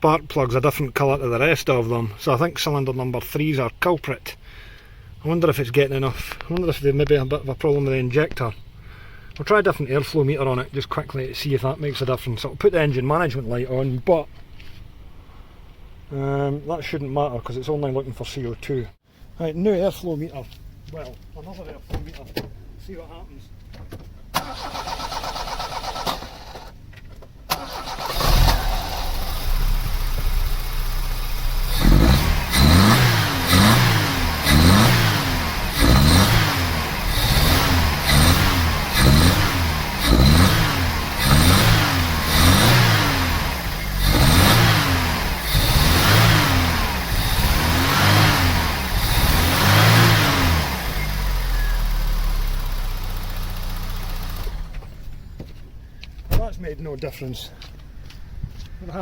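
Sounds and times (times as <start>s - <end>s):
car engine revving and misfiring: 27.5s - 55.0s.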